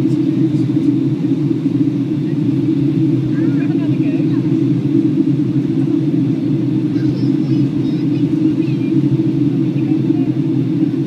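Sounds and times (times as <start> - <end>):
airliner cabin rumble: 0.0 - 11.0.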